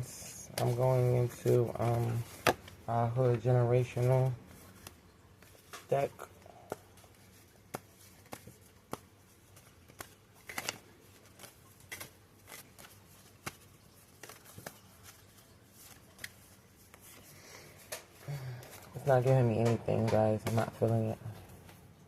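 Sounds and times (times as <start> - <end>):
cards rustling: 0.1 - 22.0
card snaps: 9.8 - 14.8.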